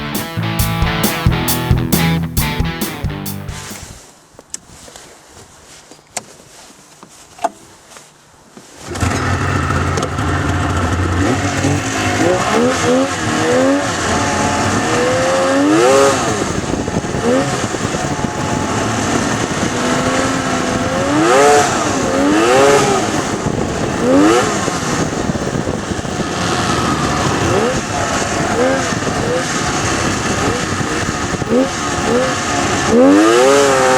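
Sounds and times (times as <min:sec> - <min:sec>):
snowmobile engine revving: 0:08.9 - 0:33.9.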